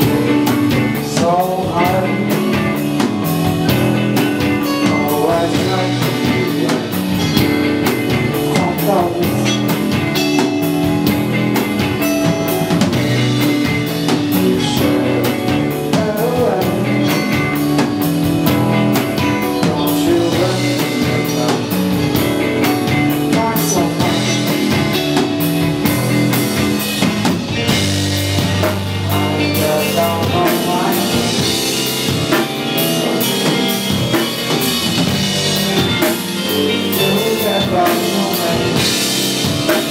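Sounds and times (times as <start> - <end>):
bass guitar: 0.0 - 39.9
drum kit beat: 0.0 - 39.9
electric guitar: 0.0 - 39.9.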